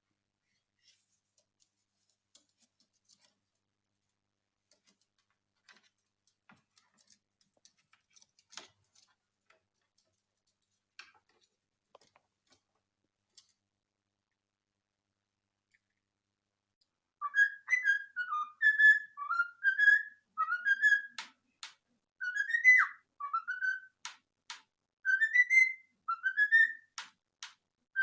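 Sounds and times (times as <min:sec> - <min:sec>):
faint small clicks and scratches: 0:00.8 - 0:13.7.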